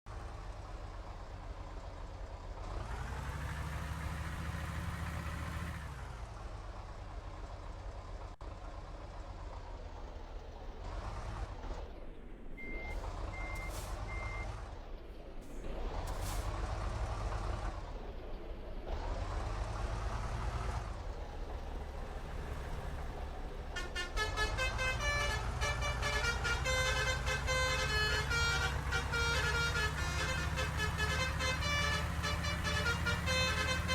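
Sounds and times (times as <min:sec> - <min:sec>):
road vehicles passing: 0:00.0 - 0:33.9
short beeps: 0:12.6 - 0:14.5
bus horn playing warbling melody: 0:23.6 - 0:33.9.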